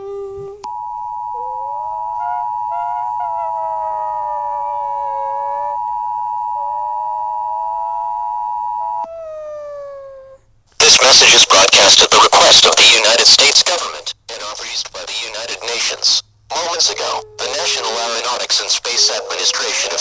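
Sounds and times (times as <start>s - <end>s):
wavering tone: 0.0s - 9.1s
two-tone alarm: 0.6s - 9.0s.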